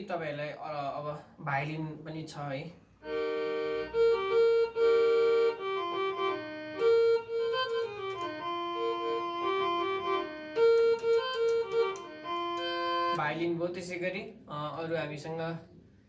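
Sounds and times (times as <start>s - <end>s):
keyboard violin tone melody: 3.0s - 13.4s.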